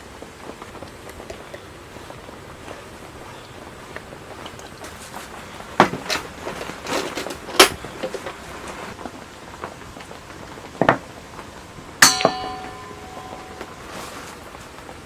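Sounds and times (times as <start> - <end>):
metal object clanging: 12.0 - 14.0.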